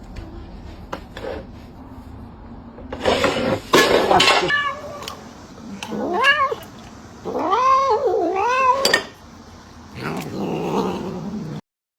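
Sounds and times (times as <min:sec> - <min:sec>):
cat meowing: 0:04.1 - 0:09.2.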